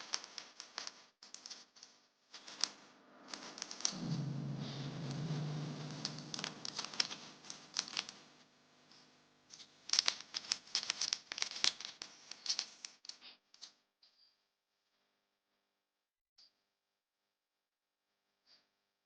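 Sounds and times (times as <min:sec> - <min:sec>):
fishing line crinkling and clicking: 0:08.9 - 0:13.7.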